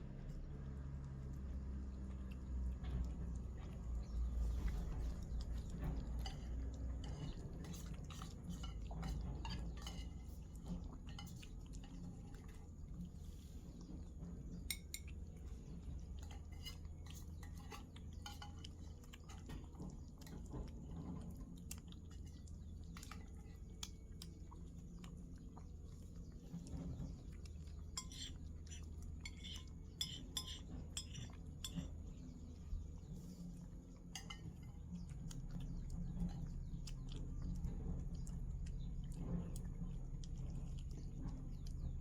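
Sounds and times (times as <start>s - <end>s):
low rumble: 0.0s - 16.3s, 31.3s - 42.0s
cat food clinking in bowl: 2.1s - 12.7s, 14.6s - 24.4s, 26.6s - 32.4s, 34.0s - 37.4s.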